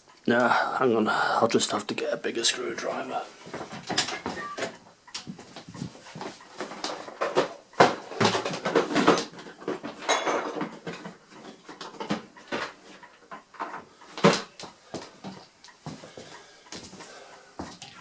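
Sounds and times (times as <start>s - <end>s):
tools knocking and clattering: 3.6s - 14.5s.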